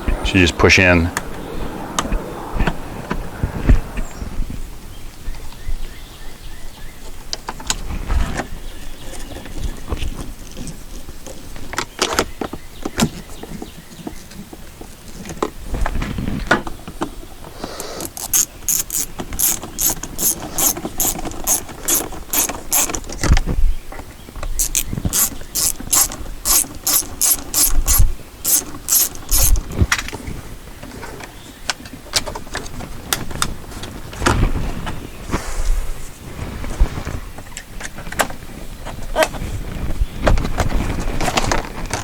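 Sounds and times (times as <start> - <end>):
hand ratchet clicking: 17.8 - 23.2, 24.6 - 29.7.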